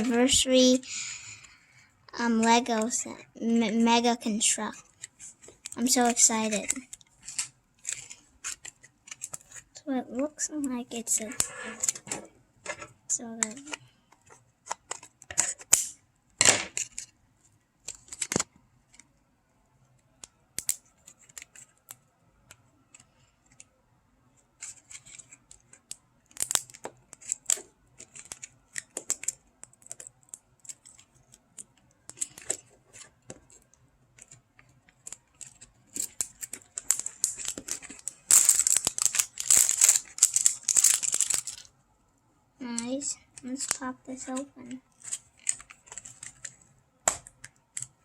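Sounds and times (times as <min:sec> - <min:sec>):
packaging clicks and crinkles: 0:04.7 - 0:09.8, 0:17.8 - 0:19.1, 0:24.5 - 0:41.8, 0:42.6 - 0:48.0
packaging tearing: 0:26.3 - 0:28.4, 0:35.1 - 0:41.7.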